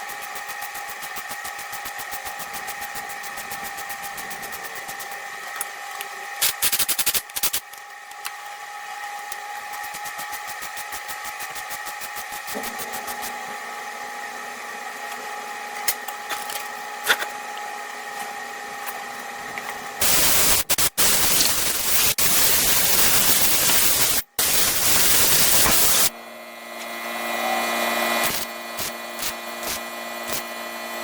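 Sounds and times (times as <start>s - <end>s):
welding arc hissing and crackling: 0.0s - 5.2s, 6.4s - 7.7s, 9.6s - 13.4s, 20.0s - 26.1s, 28.2s - 30.5s.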